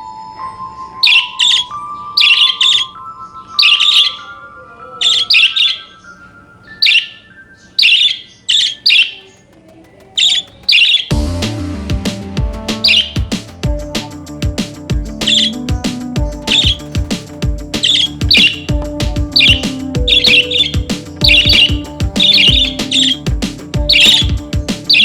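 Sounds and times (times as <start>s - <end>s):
budgerigar chirping: 3.6s - 4.4s, 5.0s - 9.5s, 12.8s - 13.3s, 15.2s - 25.0s.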